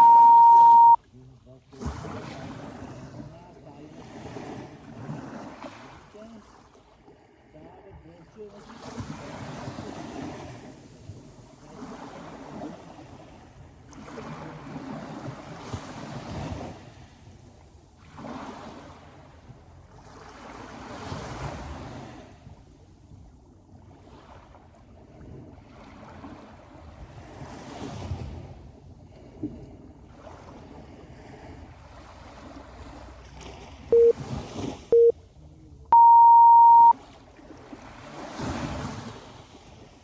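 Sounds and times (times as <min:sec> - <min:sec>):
sea waves surging: 0:00.0 - 0:01.0, 0:01.8 - 0:22.8, 0:36.0 - 0:40.0.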